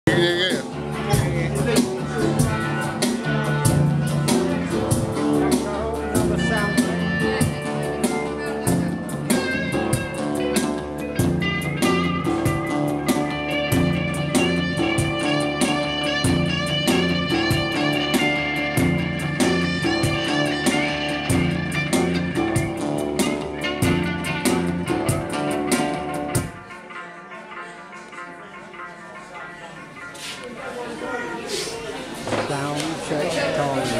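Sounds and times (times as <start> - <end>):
bass riff: 0.0 - 26.7
electric guitar: 0.1 - 30.5.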